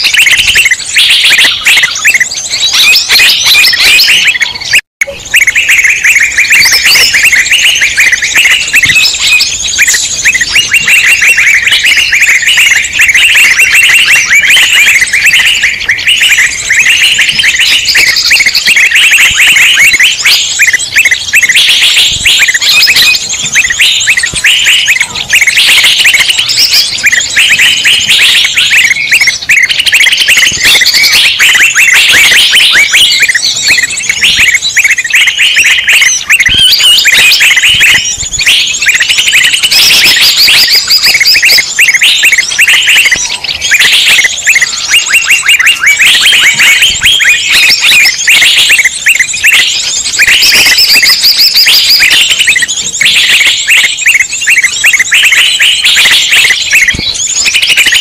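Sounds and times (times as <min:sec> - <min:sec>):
songbirds chirping: 0:00.0 - 0:58.0.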